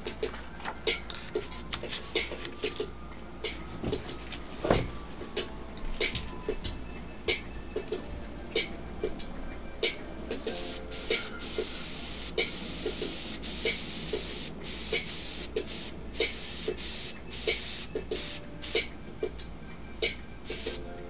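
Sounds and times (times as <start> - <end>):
airbrush hissing in bursts: 10.4 - 18.9, 20.5 - 20.8.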